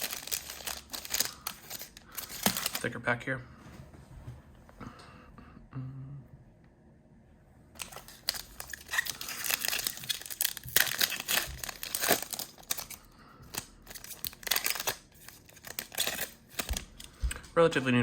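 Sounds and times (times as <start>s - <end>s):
foil wrapper tearing and crinkling: 0.0s - 2.9s, 7.8s - 17.1s.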